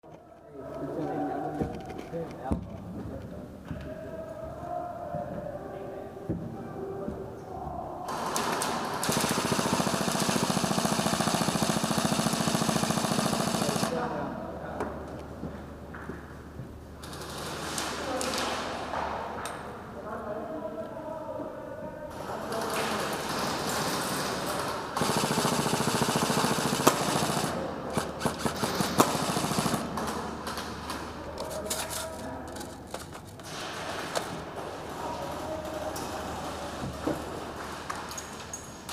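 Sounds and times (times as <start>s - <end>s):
airsoft gun firing full-auto: 8.1s - 14.1s, 23.2s - 31.0s.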